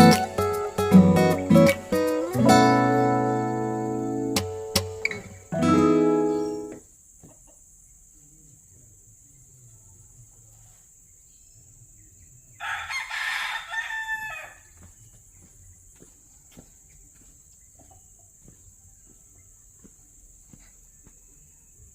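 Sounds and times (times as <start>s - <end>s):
rooster crowing: 12.6s - 14.8s.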